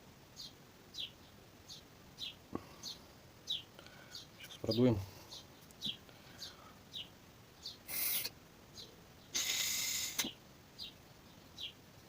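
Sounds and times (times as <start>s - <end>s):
compressed air hissing: 7.9s - 8.3s, 9.4s - 10.3s.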